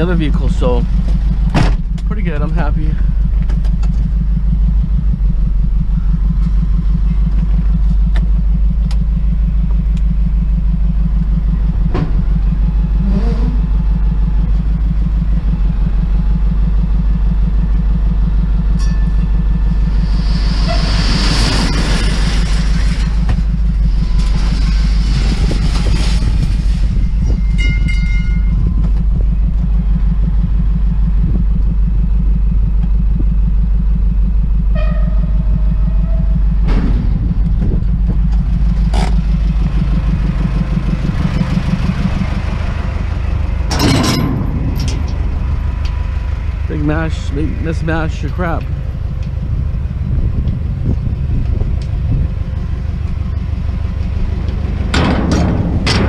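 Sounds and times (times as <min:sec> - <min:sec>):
vehicle engine running: 0:00.0 - 0:56.0
loud hissing rush: 0:19.9 - 0:22.8.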